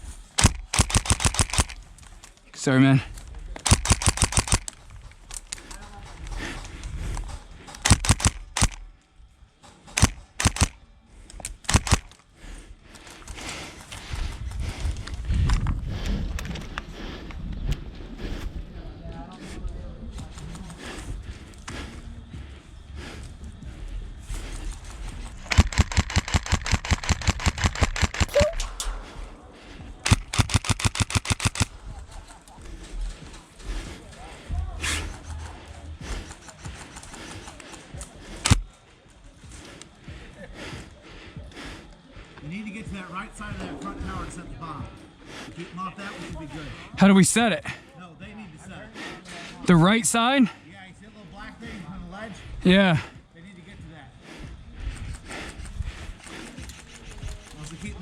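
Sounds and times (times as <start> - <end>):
airsoft guns firing pops: 0.3 - 2.3, 3.6 - 5.8, 7.2 - 8.9, 9.9 - 10.8, 11.4 - 12.2, 30.0 - 31.8.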